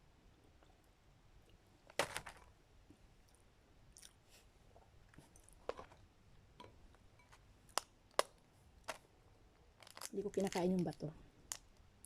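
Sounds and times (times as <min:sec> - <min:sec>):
faint chewing: 0:03.2 - 0:09.0.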